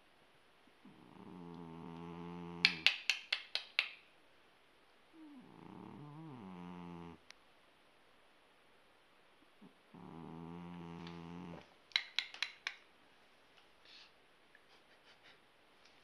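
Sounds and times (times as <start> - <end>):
cat snoring: 0.8 - 2.8, 5.1 - 7.2, 9.6 - 11.6
sharp clicks: 11.9 - 12.8.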